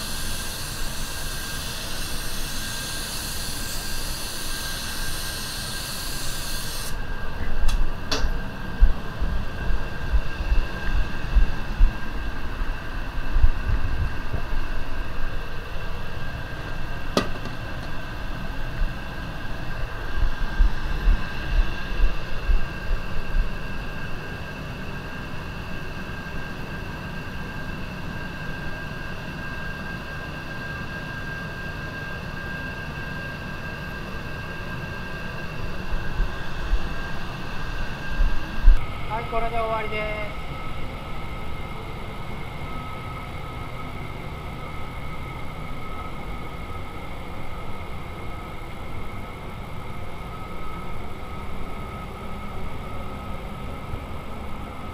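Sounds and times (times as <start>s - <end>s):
spray gun hissing: 0.0s - 7.0s
ventilation noise with high hum: 0.0s - 54.9s.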